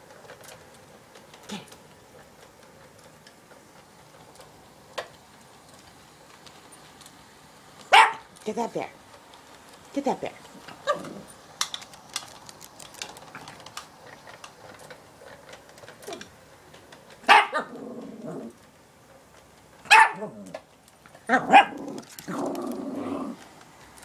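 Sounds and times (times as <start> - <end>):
small dog yapping: 7.9 - 8.2, 10.8 - 11.2, 17.2 - 17.9, 19.9 - 20.5, 21.3 - 22.4.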